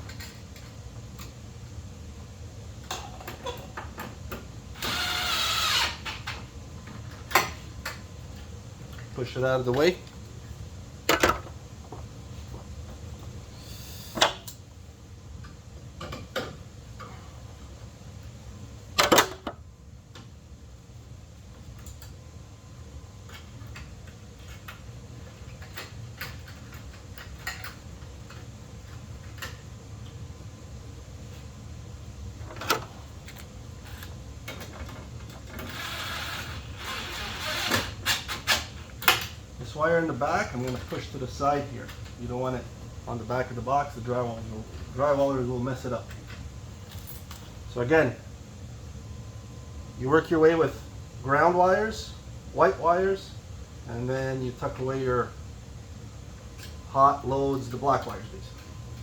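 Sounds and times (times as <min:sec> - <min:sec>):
low steady hum: 0:00.0 - 0:59.0.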